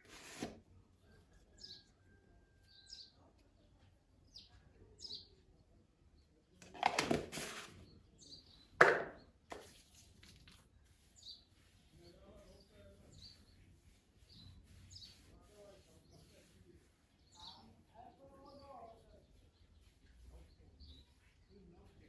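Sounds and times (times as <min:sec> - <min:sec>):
small birds chirping: 0:01.4 - 0:06.4, 0:07.5 - 0:22.0.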